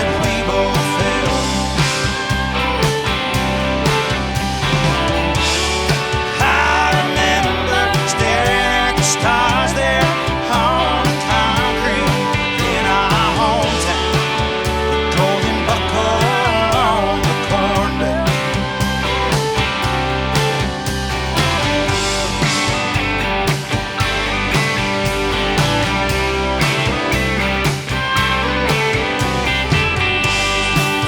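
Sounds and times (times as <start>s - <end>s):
drums beating: 0.0s - 31.0s
rock band playing: 0.0s - 31.0s.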